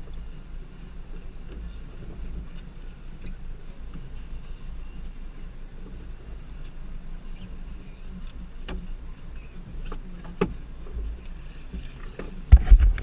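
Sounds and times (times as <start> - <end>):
boat engine low rumble: 0.0 - 13.0.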